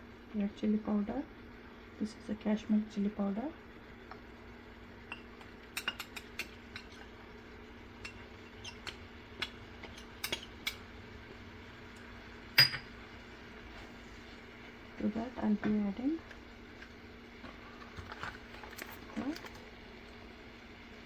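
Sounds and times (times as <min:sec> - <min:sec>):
spoon clinking on pan: 0:05.1 - 0:07.1, 0:08.0 - 0:10.8, 0:12.6 - 0:12.9
spoon scraping a pan: 0:05.1 - 0:07.2, 0:07.9 - 0:10.9.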